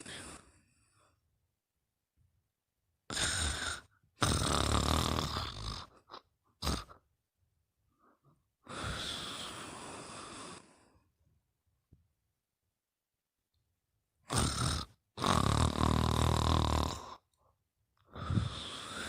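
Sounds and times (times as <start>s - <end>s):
person snoring: 3.1s - 7.0s, 8.7s - 10.9s, 14.3s - 17.3s, 18.1s - 19.0s
short snort: 3.1s - 7.0s, 14.3s - 17.2s
long noisy breath: 8.0s - 11.0s, 18.1s - 19.0s.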